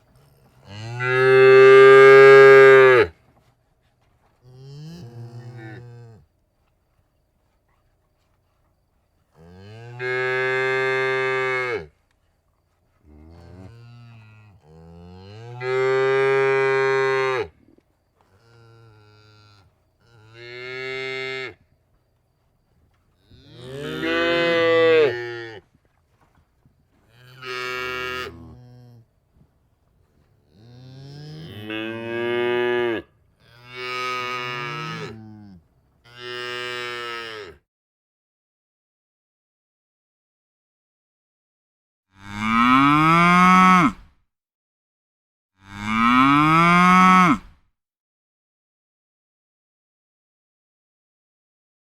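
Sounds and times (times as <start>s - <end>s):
cows mooing: 23.3s - 25.6s.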